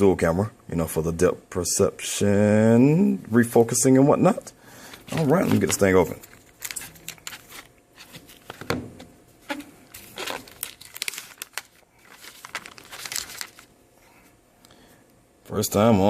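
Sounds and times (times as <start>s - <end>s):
plastic packaging crinkling and tearing: 5.0s - 8.7s, 9.5s - 13.7s.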